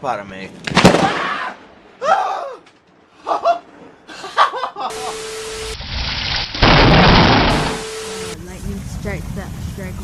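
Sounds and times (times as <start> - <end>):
heavy rain hiss: 4.9 - 10.0
loud thunderclap: 6.6 - 7.8.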